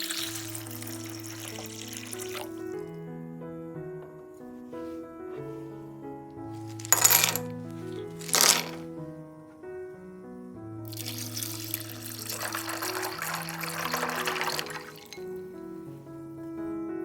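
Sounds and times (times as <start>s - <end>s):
kitchen tap water running: 0.0s - 2.6s, 10.9s - 15.2s
background music melody: 0.0s - 17.0s.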